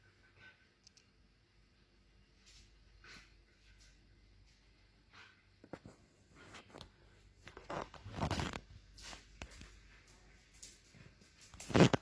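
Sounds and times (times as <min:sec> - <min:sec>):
scratching and scraping: 0:05.1 - 0:10.8, 0:11.4 - 0:12.0.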